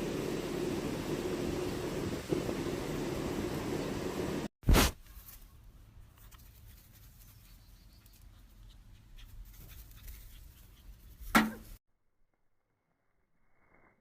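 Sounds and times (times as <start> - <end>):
low steady hum: 0.0 - 4.5
faint scuffs and patter: 4.7 - 11.8.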